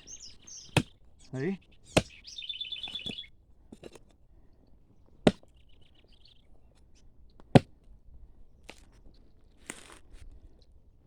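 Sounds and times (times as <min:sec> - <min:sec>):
bird trilling: 0:00.0 - 0:03.3, 0:05.6 - 0:06.4
hoe chopping into ground: 0:00.3 - 0:01.0, 0:01.9 - 0:02.2, 0:05.2 - 0:05.5, 0:07.5 - 0:07.7.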